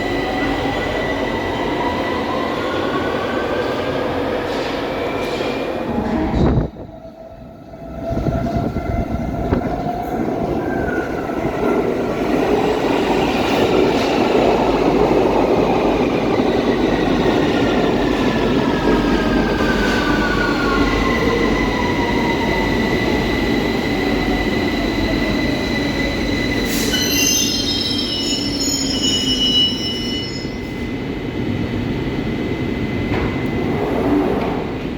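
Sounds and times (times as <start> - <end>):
train brakes squealing: 19.6 - 30.9.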